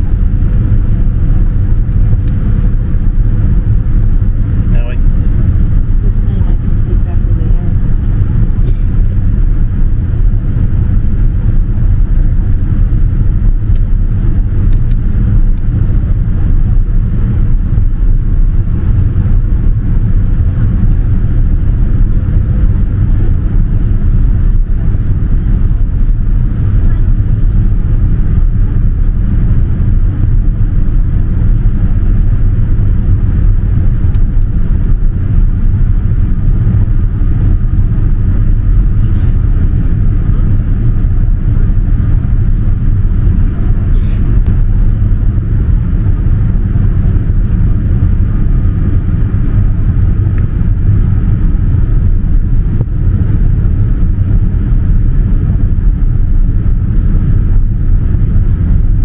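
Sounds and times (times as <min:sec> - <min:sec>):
airliner cabin rumble: 0:00.0 - 0:59.0.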